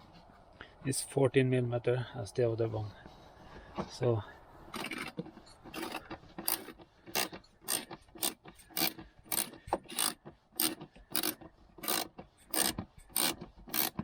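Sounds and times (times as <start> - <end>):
ratchet wrench clicking: 5.8 - 14.0.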